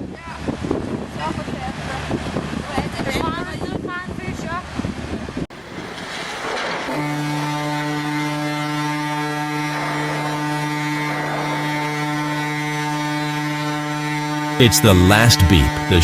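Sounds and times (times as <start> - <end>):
ship's horn blast: 6.8 - 16.0.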